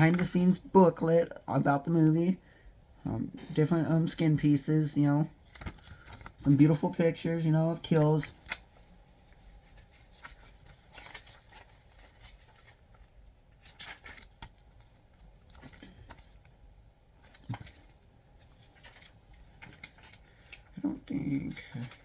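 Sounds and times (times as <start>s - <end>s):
paper pages rustling: 5.4s - 22.0s.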